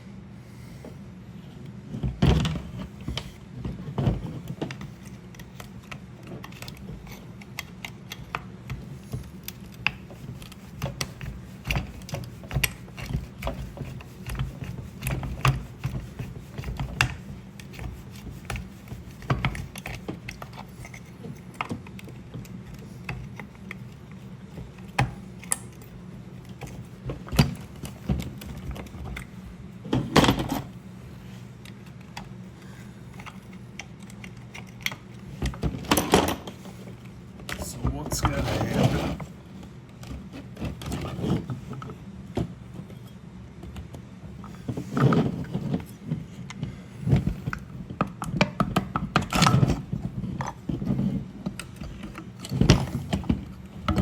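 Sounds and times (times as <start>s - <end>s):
low steady hum: 0.0s - 54.0s.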